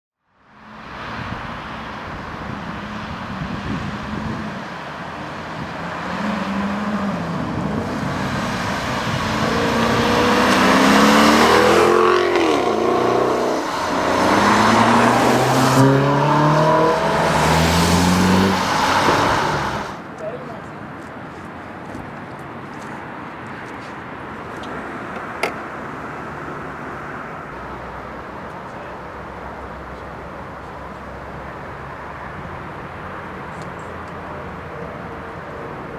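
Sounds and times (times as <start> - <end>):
sports car accelerating hard: 2.4 - 20.0.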